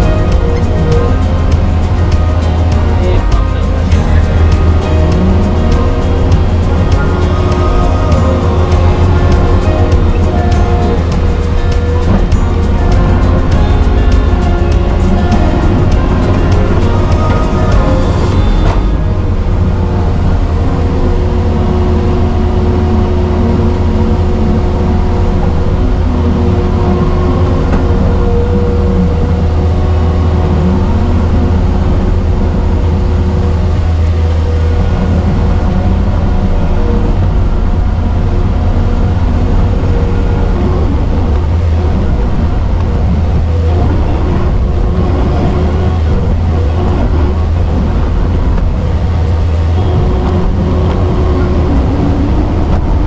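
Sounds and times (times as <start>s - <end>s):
diesel engine droning: 0.0s - 53.0s.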